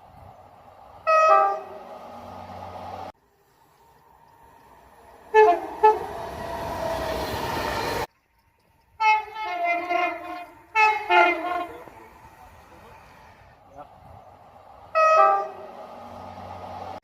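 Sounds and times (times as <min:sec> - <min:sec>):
passing train: 0:00.0 - 0:17.0
train horn blasts: 0:01.0 - 0:02.4, 0:05.3 - 0:06.2, 0:09.0 - 0:12.2, 0:14.9 - 0:16.3.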